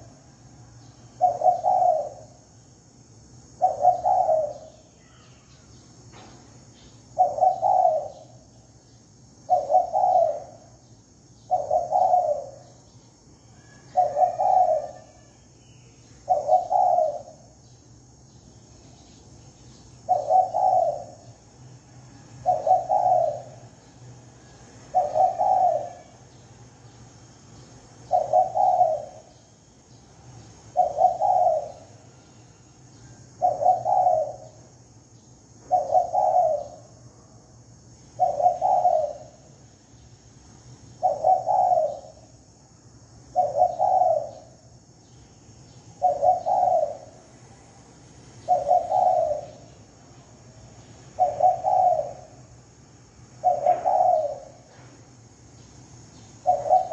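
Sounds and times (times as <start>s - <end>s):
faint steady hum: 0.0s - 56.9s
dove cooing: 1.2s - 2.4s, 3.6s - 5.2s, 7.2s - 8.4s, 9.5s - 10.8s, 11.5s - 12.8s, 13.6s - 15.3s, 16.2s - 17.6s, 20.1s - 21.3s, 22.4s - 23.6s, 24.9s - 26.1s, 28.0s - 29.3s, 30.7s - 31.9s, 33.4s - 34.6s, 35.7s - 37.0s, 38.2s - 39.5s, 41.0s - 42.2s, 43.3s - 44.6s, 46.0s - 47.2s, 48.4s - 49.7s, 51.2s - 52.5s, 53.4s - 54.9s, 56.4s - 56.9s.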